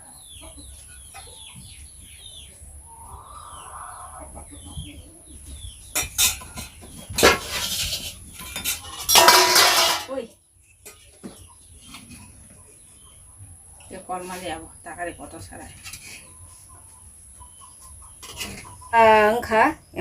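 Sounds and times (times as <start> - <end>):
chickens clucking: 0.0 - 9.9, 10.5 - 20.0
cookware clattering and scraping: 5.9 - 10.2, 18.2 - 18.8.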